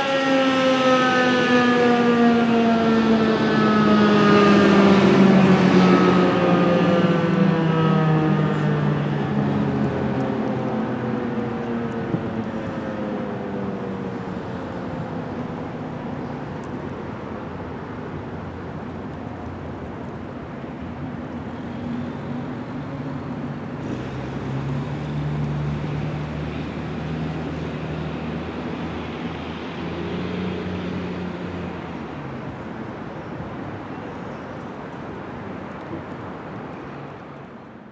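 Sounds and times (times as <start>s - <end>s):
siren winding down: 0.0s - 9.8s
street traffic noise: 0.0s - 37.9s
low engine hum: 0.9s - 37.8s.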